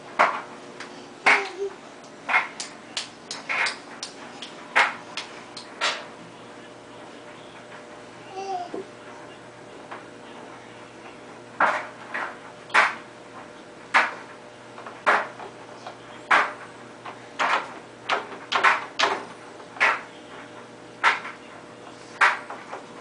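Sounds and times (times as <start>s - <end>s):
dishes clattering in dishwasher: 4.4s - 6.1s, 11.6s - 13.0s, 13.9s - 15.6s, 16.3s - 20.1s.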